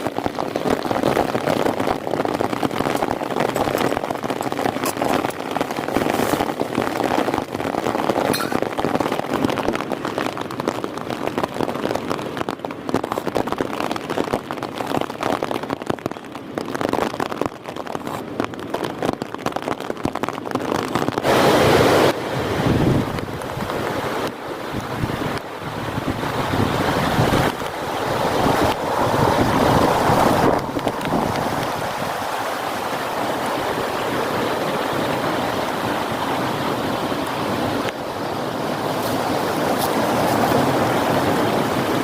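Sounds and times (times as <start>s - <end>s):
heavy rain falling: 0.0s - 42.0s
strong wind: 21.2s - 42.0s
loud rush: 26.5s - 33.8s.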